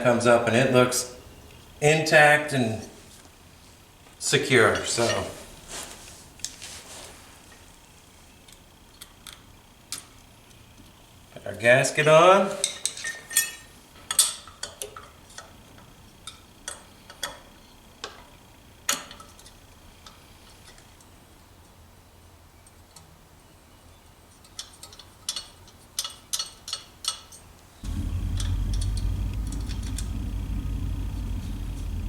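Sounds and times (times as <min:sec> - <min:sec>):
metal parts clicking and tapping: 0:24.4 - 0:27.4
steady low rumble: 0:27.8 - 0:32.0.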